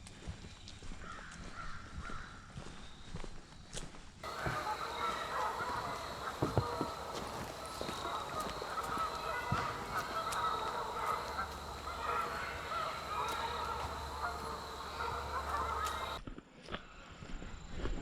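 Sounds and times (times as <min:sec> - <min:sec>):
geese honking: 0:04.2 - 0:16.2.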